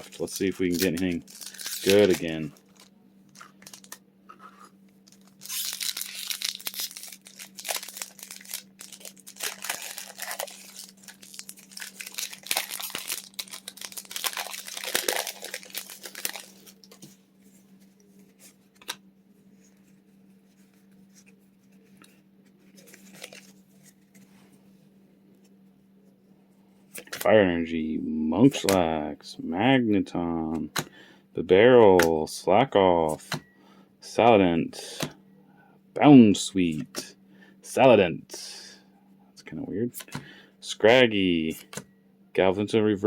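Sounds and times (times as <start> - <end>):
foil wrapper tearing and crinkling: 0.0 - 4.0, 5.0 - 17.0, 22.8 - 23.6.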